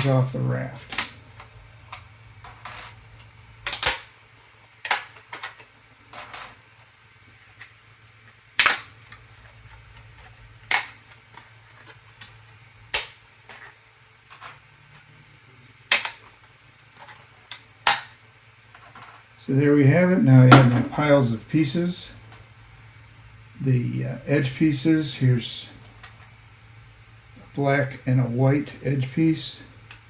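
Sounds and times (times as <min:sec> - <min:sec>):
plastic pieces snapping off: 0:03.7 - 0:04.1, 0:04.8 - 0:05.7, 0:08.6 - 0:09.0, 0:10.7 - 0:11.0, 0:12.9 - 0:13.2, 0:15.9 - 0:16.2, 0:17.5 - 0:18.1.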